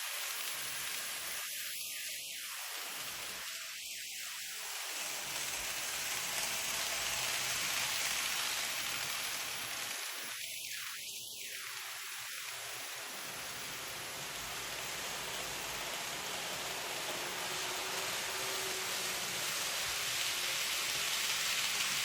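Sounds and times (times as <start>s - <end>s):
model train rolling on track: 4.6s - 10.8s, 11.5s - 22.0s.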